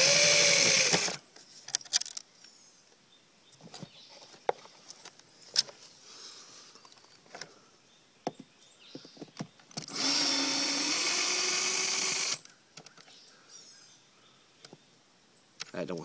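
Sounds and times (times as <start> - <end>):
power drill running: 0.0 - 1.2, 9.9 - 12.4.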